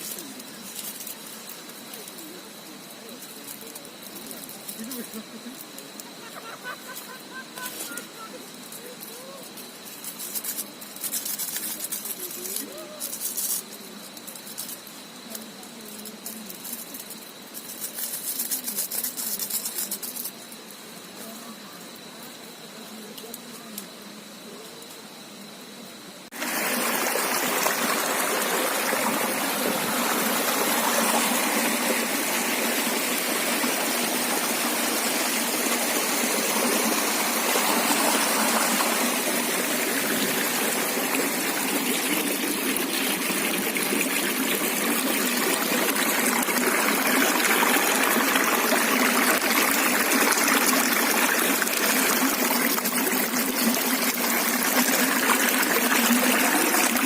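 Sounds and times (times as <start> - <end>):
river water rushing over rocks: 26.4 - 57.0.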